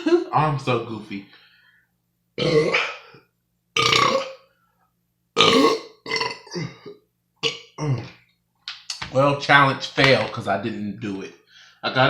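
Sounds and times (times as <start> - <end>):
man burping: 2.4 - 3.0, 3.8 - 4.4, 5.4 - 8.2.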